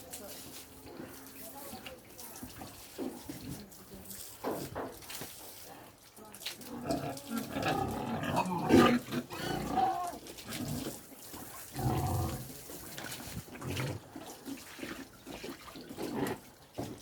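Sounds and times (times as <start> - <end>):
running water: 0.0 - 17.0
pigs grunting: 6.7 - 11.0, 11.7 - 12.6, 16.0 - 16.5.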